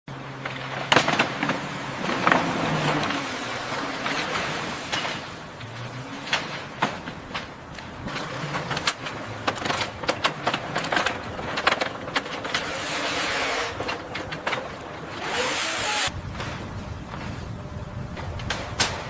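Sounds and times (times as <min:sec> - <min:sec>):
sharp clicks and knocks: 0:04.0 - 0:17.4, 0:18.1 - 0:19.0.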